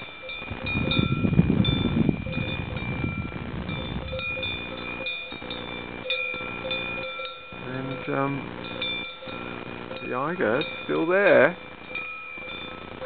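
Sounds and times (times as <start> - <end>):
cowbells clanking: 0.0 - 13.0
loud rumbling noise: 0.5 - 4.2.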